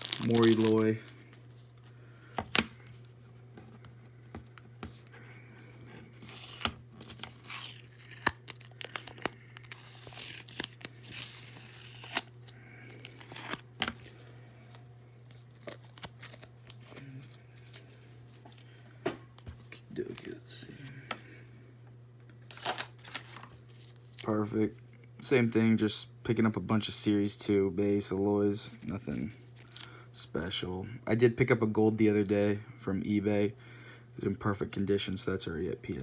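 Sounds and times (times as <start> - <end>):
packaging torn and crinkled: 0.0 - 1.3, 6.1 - 17.9, 22.5 - 24.3
steady low hum: 0.0 - 36.0.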